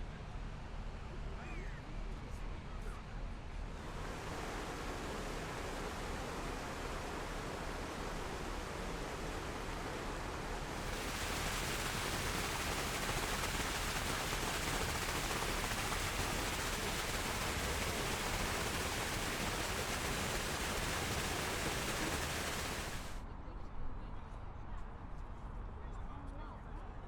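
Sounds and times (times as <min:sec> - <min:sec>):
steady rushing noise: 0:03.7 - 0:23.2.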